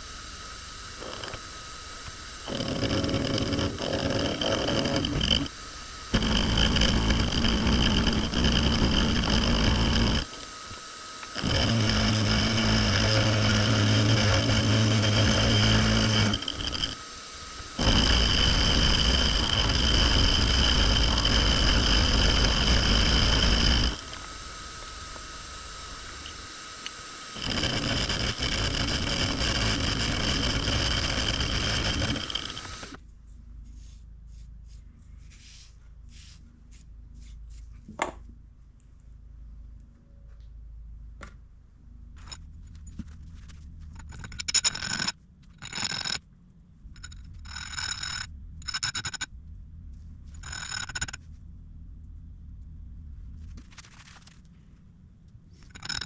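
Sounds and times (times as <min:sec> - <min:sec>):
power tool running: 0:00.0 - 0:33.0
grinding against metal: 0:02.4 - 0:05.5, 0:06.1 - 0:10.4, 0:11.4 - 0:24.2, 0:27.3 - 0:33.0, 0:55.6 - 0:56.0.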